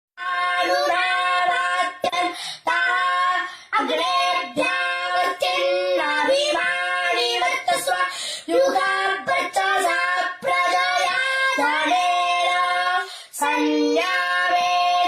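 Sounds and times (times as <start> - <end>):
boy chanting: 0.2 - 15.0
boy breathing: 2.2 - 2.7, 3.4 - 3.8, 8.0 - 8.5, 13.0 - 13.4.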